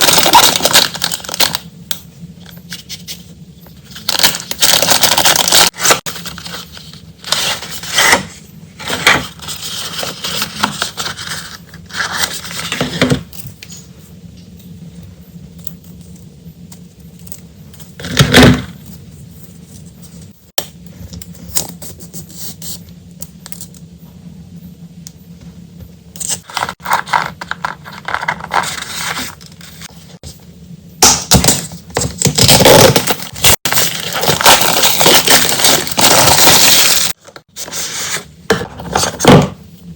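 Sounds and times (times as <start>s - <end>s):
plastic wrapping crinkling: 0.0s - 1.6s, 4.0s - 6.6s, 32.3s - 37.2s.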